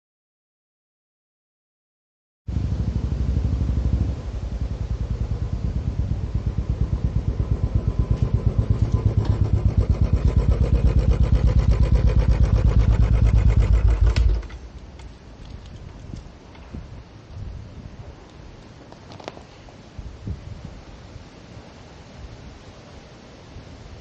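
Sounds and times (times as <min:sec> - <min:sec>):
small motor running: 0:04.9 - 0:14.5.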